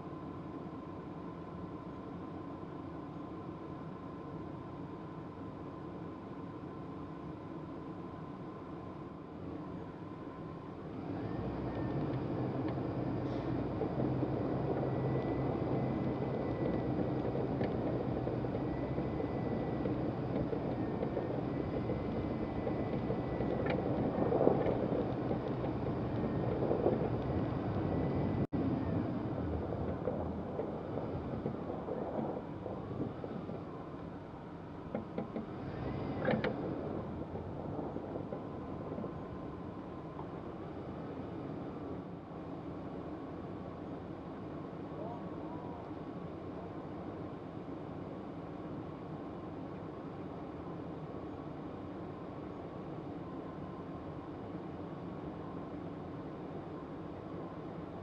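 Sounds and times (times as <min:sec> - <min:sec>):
thin whining tone: 0:03.4 - 0:41.8
heavy vehicle engine running: 0:10.2 - 0:42.6.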